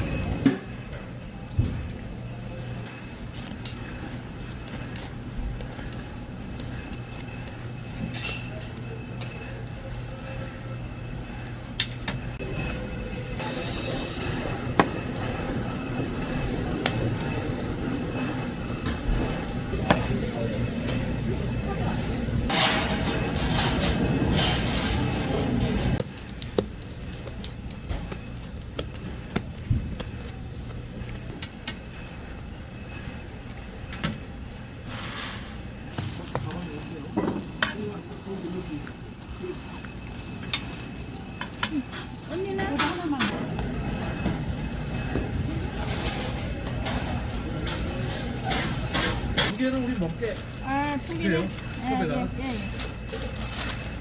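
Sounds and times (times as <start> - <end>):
steady low hum: 0.0 - 54.0
metal utensils clinking on griddle: 3.4 - 12.2, 35.9 - 43.4.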